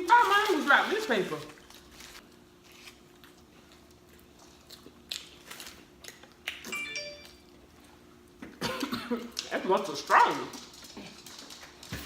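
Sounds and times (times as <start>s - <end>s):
mouth smacks of eating: 3.2s - 6.7s
electronic doorbell chime: 6.7s - 7.4s.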